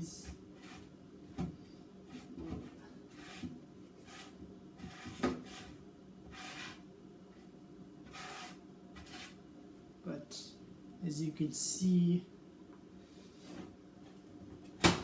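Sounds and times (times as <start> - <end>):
kitchen items rustling and scraping: 0.0 - 6.8, 13.1 - 14.8.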